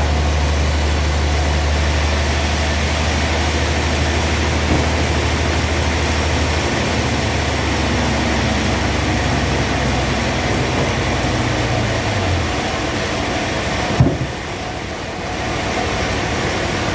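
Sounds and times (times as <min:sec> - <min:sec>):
low engine hum: 0:00.0 - 0:16.9
sawmill machinery running: 0:00.0 - 0:16.9
single knock: 0:14.0 - 0:14.3.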